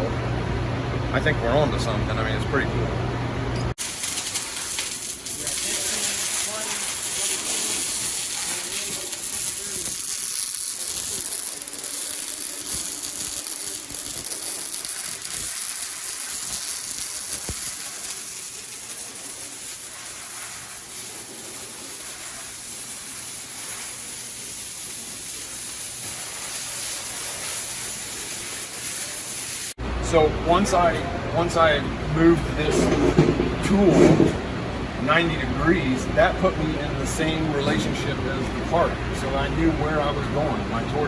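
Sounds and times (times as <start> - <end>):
welding arc sizzling and crackling: 3.7 - 29.8.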